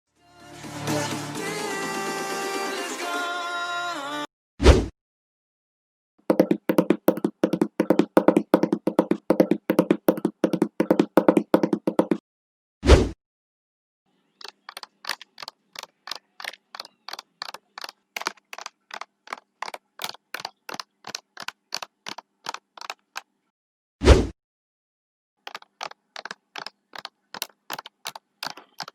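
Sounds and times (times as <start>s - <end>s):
horse hoofbeats: 6.3s - 12.2s.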